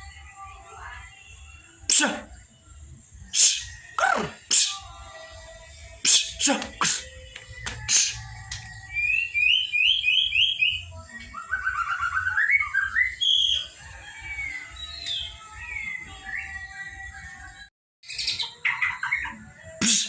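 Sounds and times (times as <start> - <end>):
bird singing whistled notes: 6.1 - 17.0.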